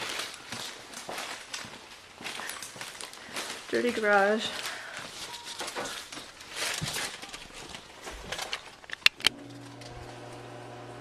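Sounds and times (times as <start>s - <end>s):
shuffling and handling knocks: 0.0s - 9.7s
sharp clicks: 8.5s - 9.9s
garage door opener motor humming: 9.3s - 11.0s.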